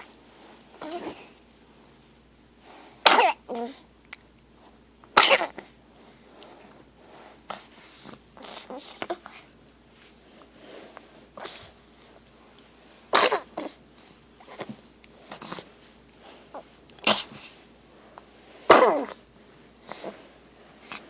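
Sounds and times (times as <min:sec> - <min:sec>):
gagging coughs: 0:03.0 - 0:03.4, 0:05.2 - 0:05.6, 0:13.1 - 0:13.7, 0:18.7 - 0:19.2
person coughing and choking: 0:03.0 - 0:03.4, 0:05.2 - 0:05.6, 0:13.1 - 0:13.6, 0:18.7 - 0:19.2.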